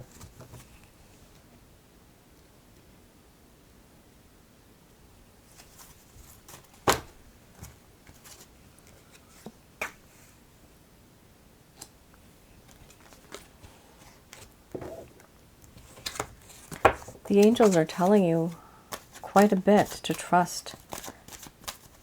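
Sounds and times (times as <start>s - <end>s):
cards tapping on a table: 16.7s - 17.3s.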